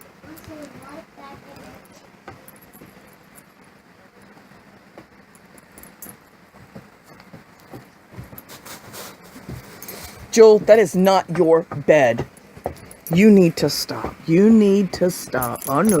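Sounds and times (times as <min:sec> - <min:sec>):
dogs shifting and jingling: 0:09.6 - 0:16.0.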